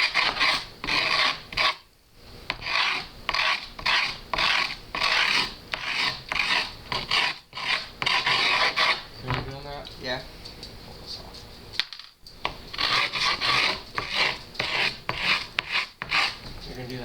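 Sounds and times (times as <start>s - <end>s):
grip tape scraping rasp: 0.0s - 1.8s, 2.6s - 9.0s, 12.7s - 16.4s.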